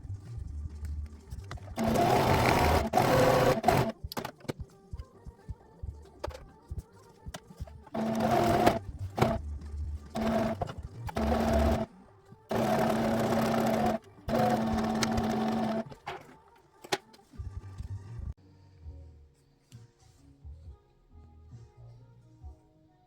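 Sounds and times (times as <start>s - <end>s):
sewing machine stitching: 1.6s - 4.4s, 7.8s - 9.4s, 10.1s - 11.9s, 12.5s - 16.3s
sewing machine clicks: 1.8s - 4.4s, 8.0s - 9.4s, 10.2s - 11.9s, 12.5s - 16.2s.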